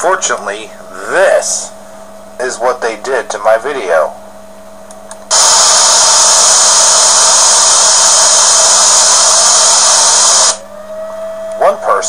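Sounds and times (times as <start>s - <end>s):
loud static hiss: 5.3s - 10.7s.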